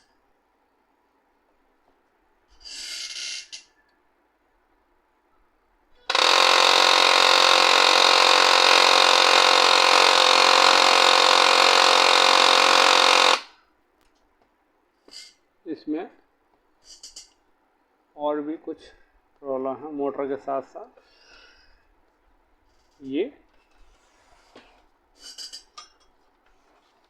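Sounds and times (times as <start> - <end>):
laser printer humming: 6.1 - 13.5.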